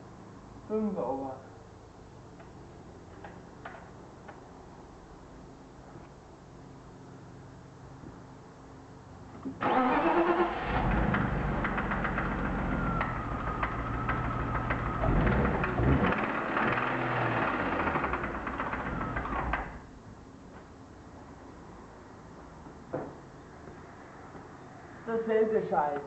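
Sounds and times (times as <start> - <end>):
car engine starting: 9.6 - 19.9.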